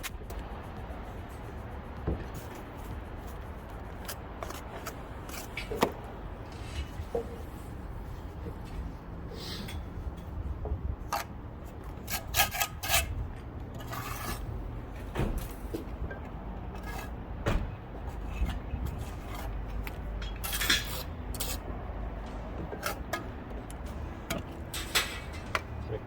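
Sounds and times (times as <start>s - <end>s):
trowel scraping stone: 11.9s - 13.2s, 13.8s - 14.6s, 18.4s - 21.7s.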